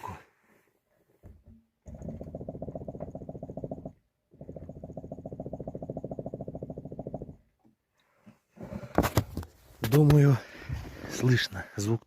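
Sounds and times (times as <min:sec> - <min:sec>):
shock absorbers knocking rattle: 0:01.2 - 0:07.6.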